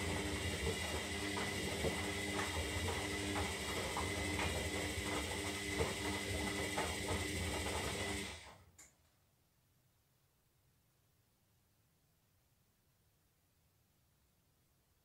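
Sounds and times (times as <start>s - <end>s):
washing machine running: 0.0s - 8.6s.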